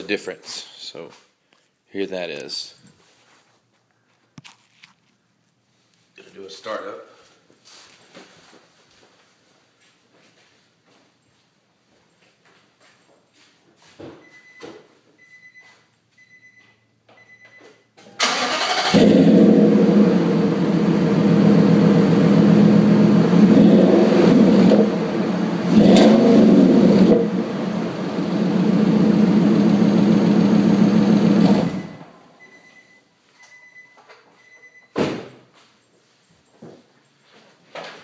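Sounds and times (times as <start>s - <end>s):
faint repeating beeps: 15.2s - 17.9s
truck engine cranking and revving: 18.2s - 32.0s.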